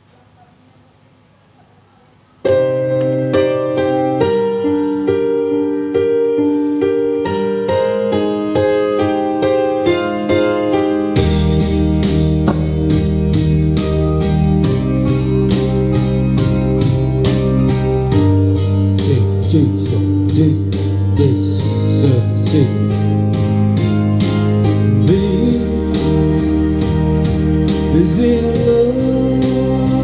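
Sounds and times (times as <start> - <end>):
keyboard piano chords: 0.0 - 30.0
bass: 2.7 - 30.0
steady drum beat: 11.2 - 13.6.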